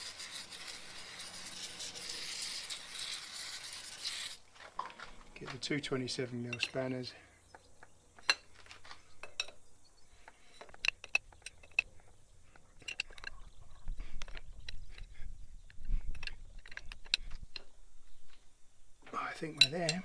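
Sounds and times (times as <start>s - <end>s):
spanners clinking on metal fitting: 6.4s - 7.0s, 9.2s - 9.6s, 19.5s - 20.0s.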